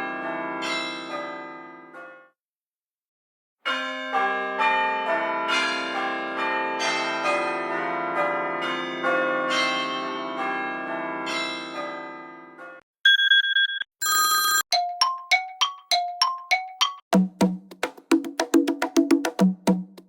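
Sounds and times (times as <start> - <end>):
church bell ringtone melody: 0.0 - 1.9, 3.7 - 12.5.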